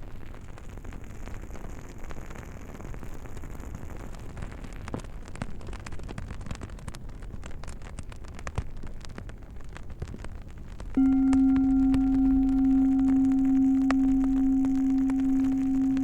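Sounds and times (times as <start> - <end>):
bonfire crackling and popping: 0.0 - 13.2
singing bowl ringing: 11.0 - 16.0.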